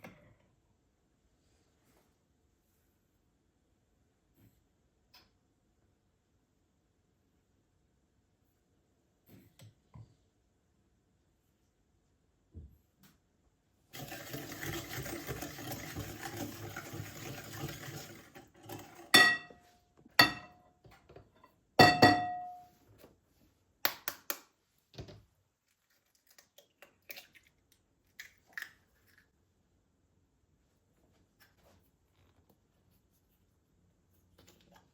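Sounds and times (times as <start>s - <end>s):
tap water running: 13.9s - 19.6s
kitchenware clinking: 17.8s - 20.6s, 21.8s - 22.8s.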